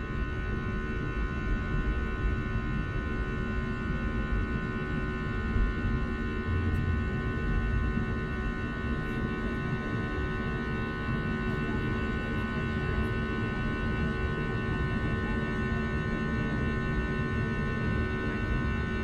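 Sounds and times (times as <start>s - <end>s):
aircraft cabin engine drone: 0.0s - 19.0s
high whining tones: 6.2s - 8.6s.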